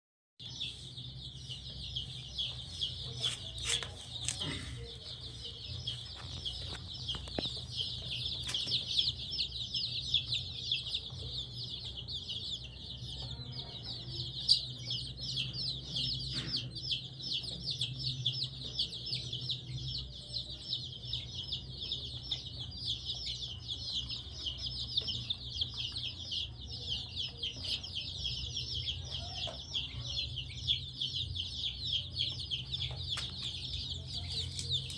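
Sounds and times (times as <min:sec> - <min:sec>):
chicks peeping: 0:00.4 - 0:34.9.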